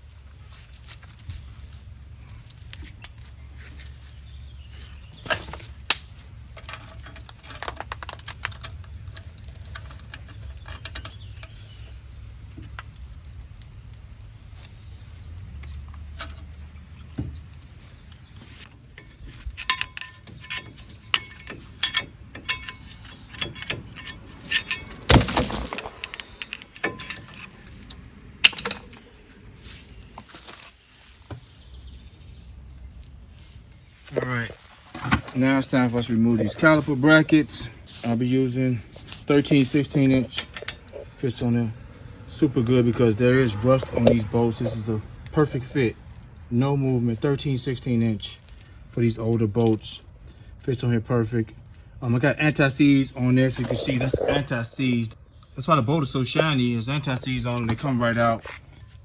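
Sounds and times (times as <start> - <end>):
metal parts clattering: 5.2 - 5.8, 19.0 - 27.6
metal tools clinking: 5.2 - 5.8, 6.5 - 12.1, 18.9 - 27.8.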